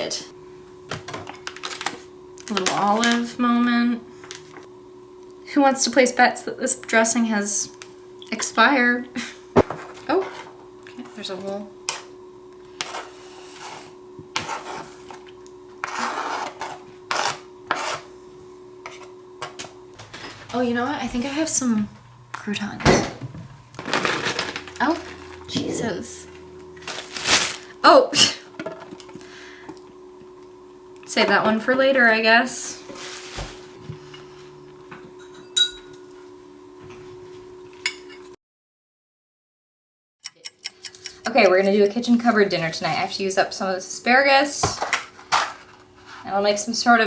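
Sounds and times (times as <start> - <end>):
faint steady hum: 0.0 - 38.4
dishes and utensils clinking: 34.9 - 36.1.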